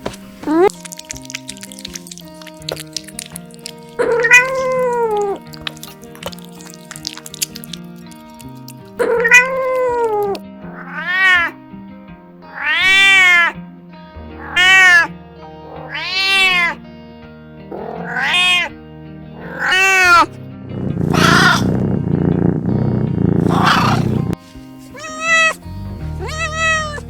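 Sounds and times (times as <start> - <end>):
background music: 0.1 - 22.0, 23.4 - 27.0
cat meowing: 0.4 - 7.8, 9.0 - 11.6, 12.5 - 13.6, 14.4 - 15.1, 15.7 - 16.8, 17.7 - 18.8, 19.4 - 20.3, 21.0 - 21.8, 23.4 - 27.0.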